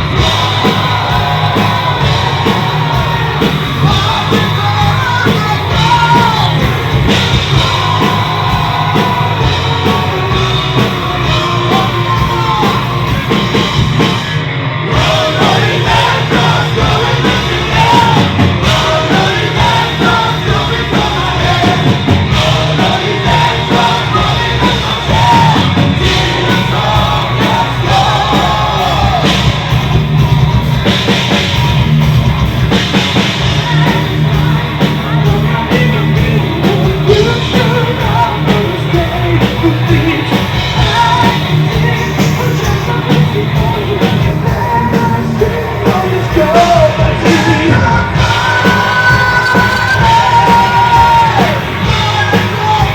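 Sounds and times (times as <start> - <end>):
person singing: 0.0 - 13.2, 33.4 - 52.9
heavy metal band playing: 0.0 - 52.9.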